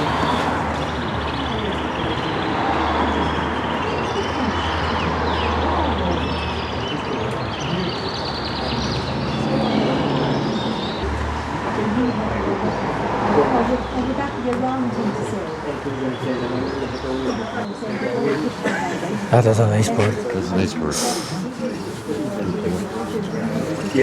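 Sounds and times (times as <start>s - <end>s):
canaries singing trills: 0.0s - 12.2s, 14.8s - 18.7s
chatter of many people: 0.0s - 24.0s.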